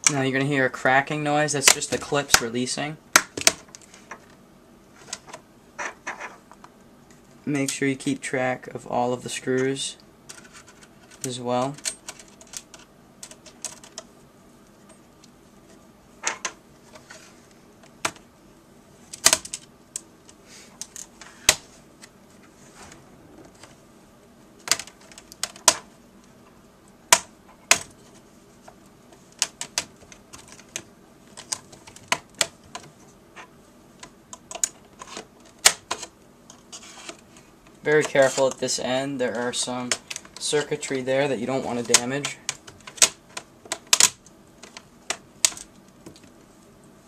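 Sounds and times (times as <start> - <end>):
plastic clips cracking and snapping: 24.6 - 25.8, 29.4 - 32.9, 34.0 - 36.6, 41.8 - 46.3.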